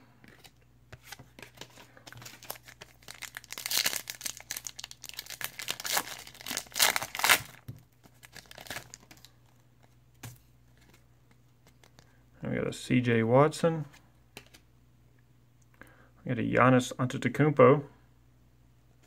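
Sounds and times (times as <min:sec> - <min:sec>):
wrapper tearing and crinkling: 0:02.2 - 0:09.3.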